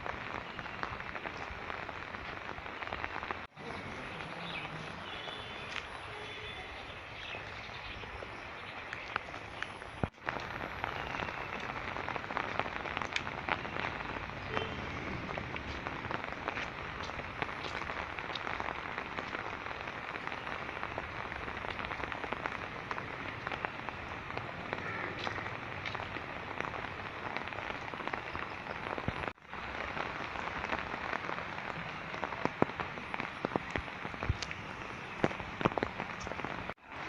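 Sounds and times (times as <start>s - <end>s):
rain falling on water: 0.0s - 37.0s.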